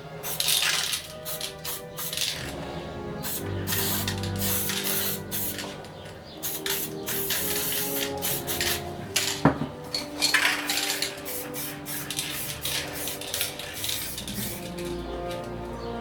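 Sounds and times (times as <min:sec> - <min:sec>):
background music: 0:00.0 - 0:16.0
spray paint hissing: 0:00.2 - 0:02.6, 0:03.2 - 0:05.8, 0:06.4 - 0:09.0, 0:10.6 - 0:15.2
metallic clinks of cans: 0:00.3 - 0:02.5, 0:06.5 - 0:15.5.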